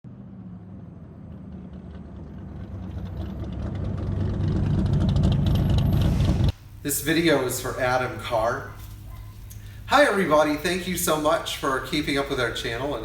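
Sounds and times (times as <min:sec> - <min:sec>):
vehicle engine humming: 0:00.0 - 0:07.9.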